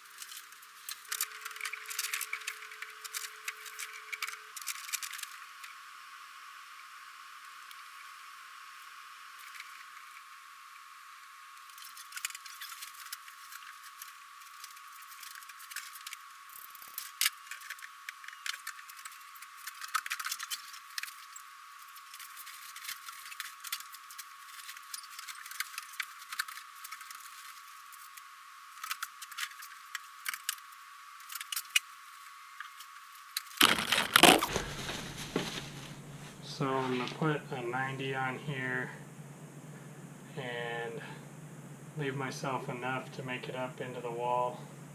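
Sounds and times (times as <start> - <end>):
plastic tubing clatter: 33.6 - 35.6.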